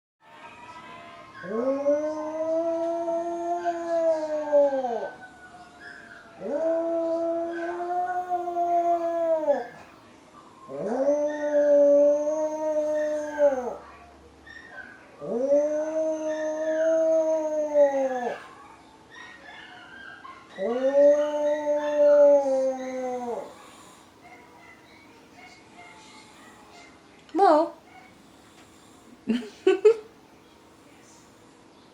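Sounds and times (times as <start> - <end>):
dog howling: 0.4 - 9.9, 10.7 - 13.9, 14.8 - 24.8.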